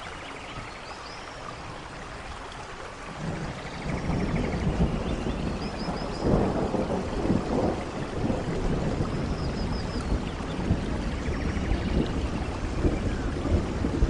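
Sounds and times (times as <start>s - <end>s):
rain falling: 0.0s - 14.0s
rumble of thunder: 3.1s - 14.0s.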